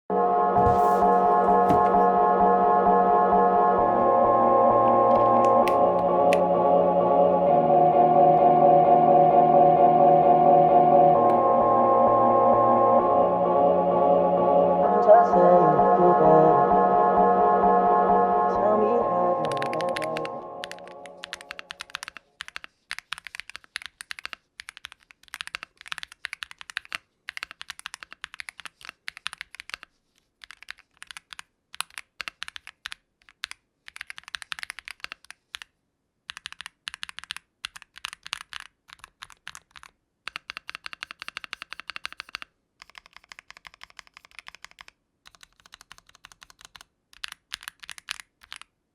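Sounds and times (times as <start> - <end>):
mechanical keyboard typing: 19.4 - 35.7, 36.3 - 48.8.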